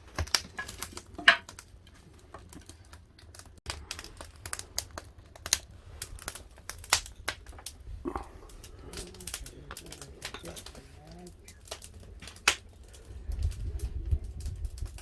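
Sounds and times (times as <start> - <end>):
firewood crackling and popping: 0.0 - 15.0.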